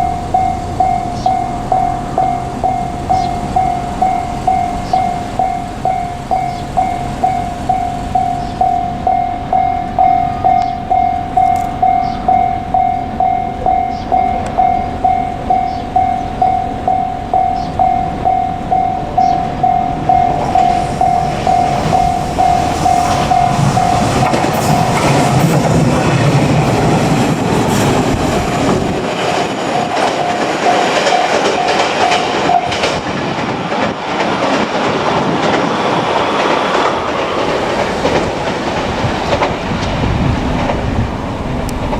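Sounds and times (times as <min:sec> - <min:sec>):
level crossing bell ringing: 0:00.0 - 0:25.4, 0:29.1 - 0:32.8
electric train passing: 0:00.0 - 0:41.9
train wheel clatter: 0:00.0 - 0:41.9.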